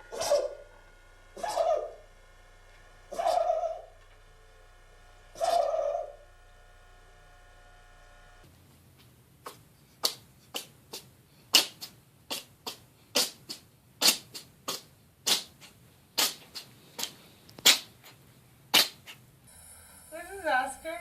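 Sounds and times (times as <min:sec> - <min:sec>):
small pet sneezing: 0:09.4 - 0:18.1, 0:18.7 - 0:19.2.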